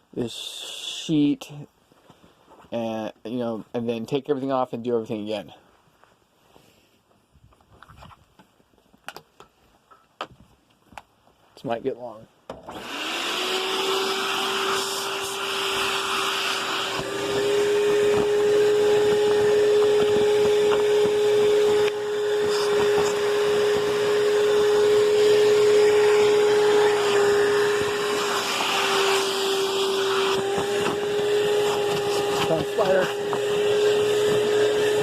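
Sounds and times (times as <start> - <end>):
vacuum cleaner running: 12.6 - 35.0
turbo brush rushing hiss: 14.3 - 21.2, 22.4 - 24.4.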